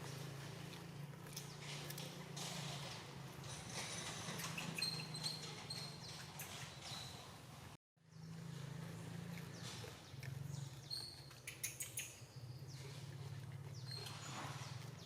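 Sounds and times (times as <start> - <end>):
monkey chewing fruit: 0.0 - 3.4, 8.4 - 15.0.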